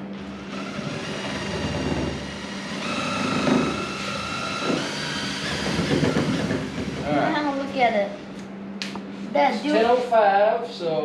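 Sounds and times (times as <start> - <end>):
power drill mixing in bucket: 0.2 - 7.4.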